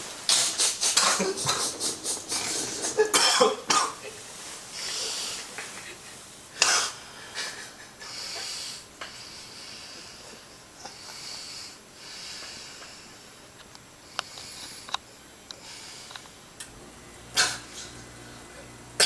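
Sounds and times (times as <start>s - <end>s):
man breathing noisily: 0.3s - 3.2s, 4.7s - 5.6s, 6.9s - 15.0s, 15.6s - 16.5s
man snorting in sleep: 0.3s - 4.1s, 17.3s - 19.0s.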